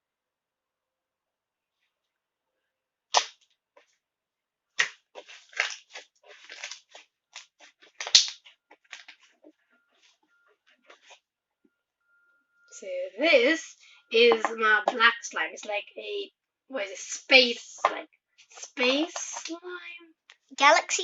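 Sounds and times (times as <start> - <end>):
slime crackling and popping: 3.1 - 3.4, 4.8 - 9.2.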